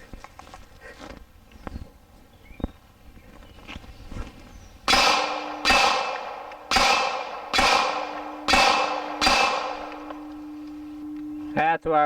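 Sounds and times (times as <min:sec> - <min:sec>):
pistol shots echoing: 0:04.9 - 0:11.6
low steady ring: 0:08.0 - 0:11.6.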